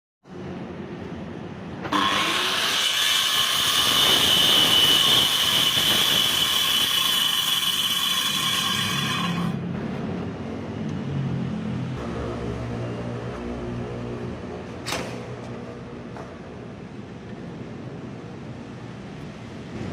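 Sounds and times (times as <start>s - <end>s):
power tool whining on wood: 1.9s - 9.6s.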